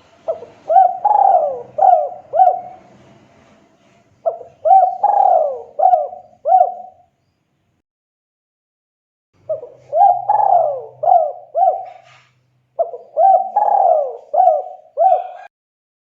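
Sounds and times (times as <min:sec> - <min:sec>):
dove cooing: 0:00.0 - 0:03.0, 0:04.2 - 0:07.1, 0:09.4 - 0:15.5.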